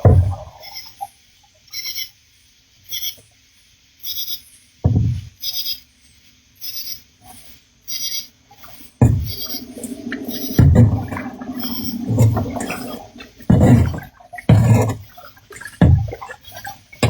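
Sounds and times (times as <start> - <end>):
low thump: 4.9 - 5.3, 9.0 - 15.0.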